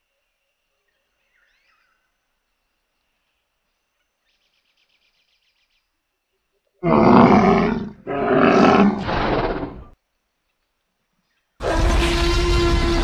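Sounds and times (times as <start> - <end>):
big cat roaring: 6.8 - 10.0, 11.6 - 13.0.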